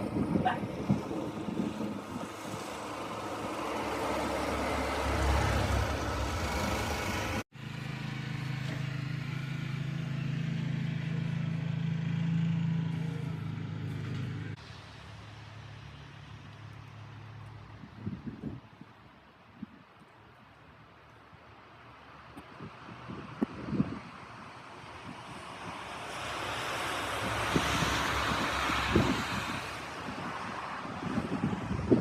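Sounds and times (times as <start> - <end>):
engine running: 0.0 - 17.7.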